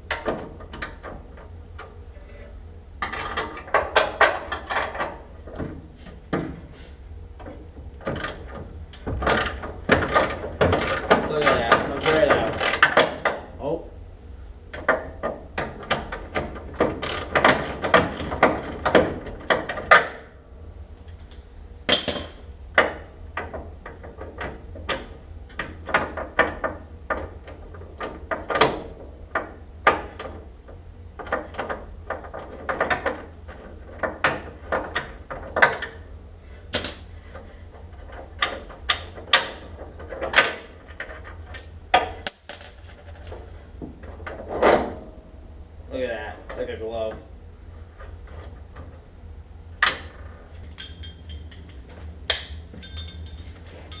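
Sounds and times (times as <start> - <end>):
metallic knocks and clinks: 40.1 - 43.4, 50.7 - 51.7, 52.7 - 54.0.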